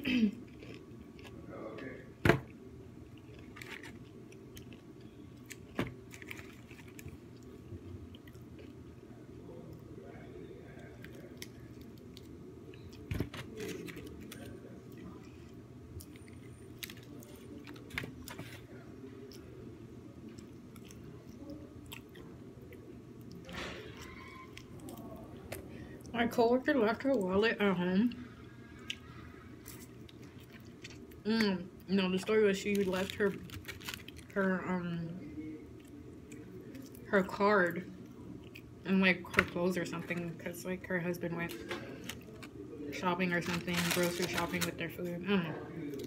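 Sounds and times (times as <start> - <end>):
steady low hum: 0.0 - 46.0
person chewing food: 0.3 - 9.8, 10.6 - 26.1, 28.2 - 31.2, 38.0 - 38.8.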